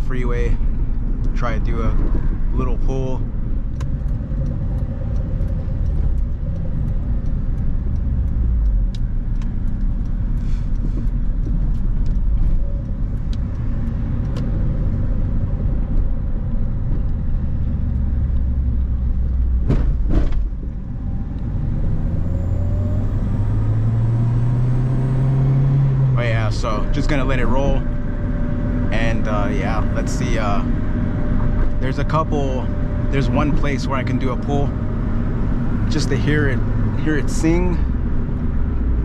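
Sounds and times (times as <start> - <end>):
car engine rumble: 0.0 - 39.0
road noise: 0.0 - 39.0
sharp clicks: 2.0 - 15.0.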